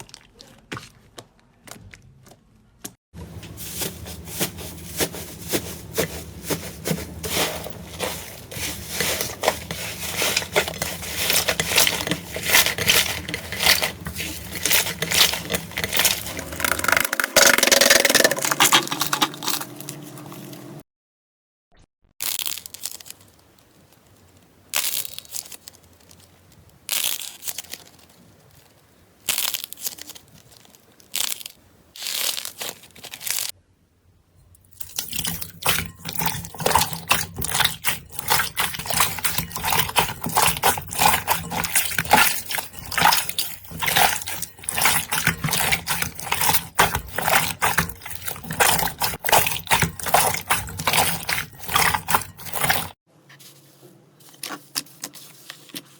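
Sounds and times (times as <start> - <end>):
slime squishing and crackling: 3.5 - 20.1, 24.2 - 33.6, 34.8 - 53.0.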